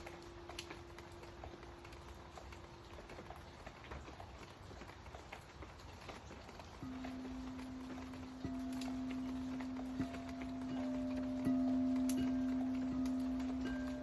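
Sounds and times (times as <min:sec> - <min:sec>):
rain falling: 0:00.0 - 0:14.0
pure ringing tone: 0:06.8 - 0:14.0.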